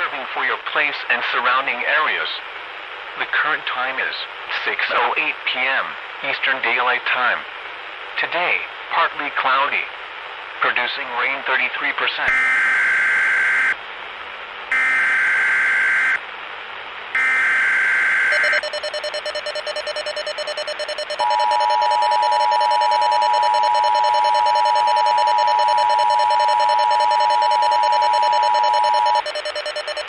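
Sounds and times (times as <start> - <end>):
two-tone attention signal: 17.2 - 30.0
screeching data bursts: 18.2 - 30.0.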